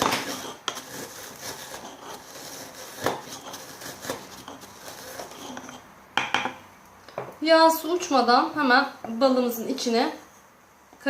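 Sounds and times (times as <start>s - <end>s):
pestle grinding seeds in mortar: 0.0s - 6.3s.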